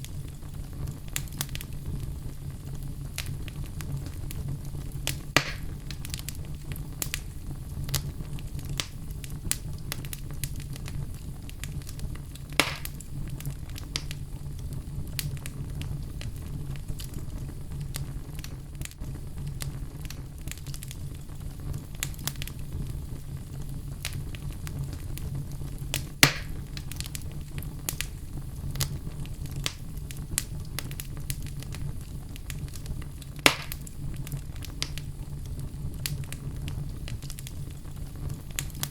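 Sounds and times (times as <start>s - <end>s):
fireplace fire crackling: 0.0s - 38.9s
loud fire pops: 0.0s - 38.9s
low fire rumble: 0.0s - 38.9s.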